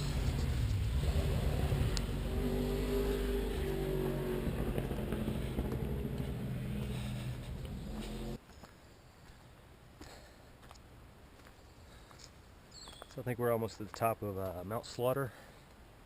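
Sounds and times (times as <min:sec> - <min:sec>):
low rumble: 0:00.0 - 0:08.4
vehicle engine running: 0:00.0 - 0:08.4.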